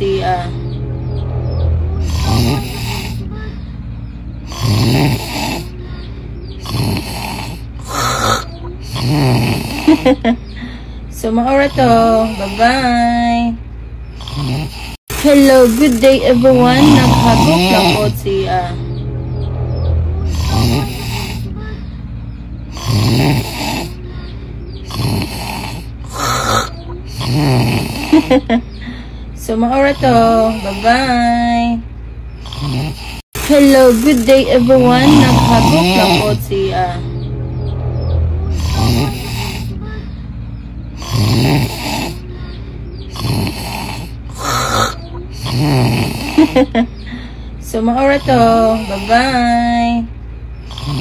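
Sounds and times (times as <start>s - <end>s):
steady low hum: 0.0s - 51.0s
person snoring loudly: 1.0s - 3.2s, 4.4s - 5.8s, 6.6s - 10.2s, 14.2s - 18.6s, 19.7s - 21.5s, 22.7s - 24.0s, 24.8s - 28.5s, 32.4s - 36.9s, 37.5s - 39.8s, 41.0s - 42.2s, 43.1s - 46.7s, 50.6s - 51.0s.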